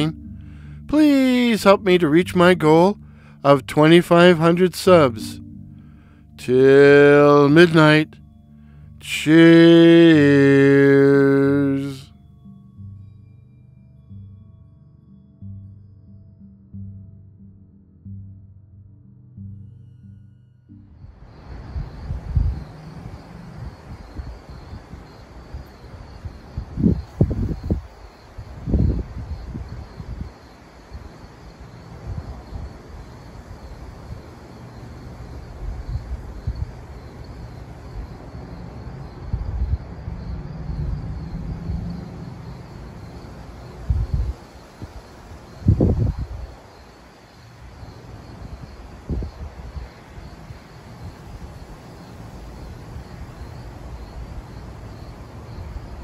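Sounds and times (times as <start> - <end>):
crickets chirping: 0.0 - 16.9, 20.7 - 56.0
wind rumbling on microphone: 21.0 - 47.0, 47.6 - 56.0.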